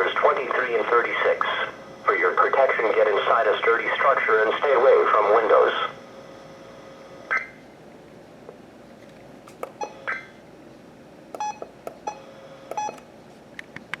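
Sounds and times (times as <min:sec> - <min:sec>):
faint radio hiss: 0:00.0 - 0:07.0
short electronic beeps and clicks: 0:07.3 - 0:07.6, 0:11.4 - 0:13.0.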